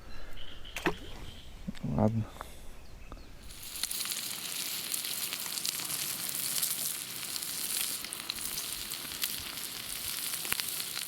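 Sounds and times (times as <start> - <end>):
eggs and bacon sizzling in a pan: 3.4 - 11.0.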